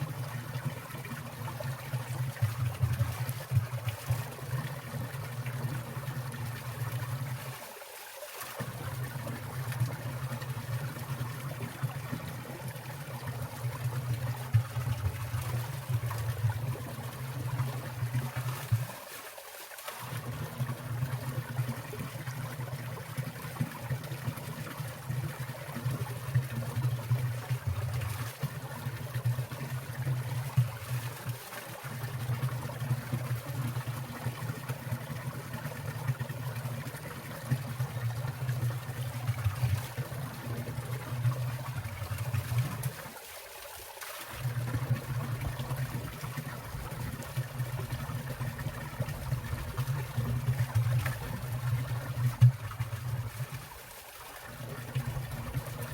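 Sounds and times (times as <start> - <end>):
stream water trickling and splashing: 0.0 - 55.9.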